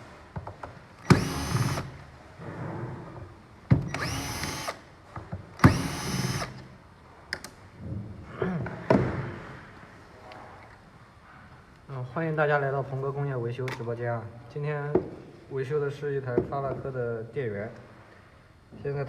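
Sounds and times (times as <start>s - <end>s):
power drill running: 1.0s - 2.1s, 3.8s - 4.8s, 5.6s - 6.7s.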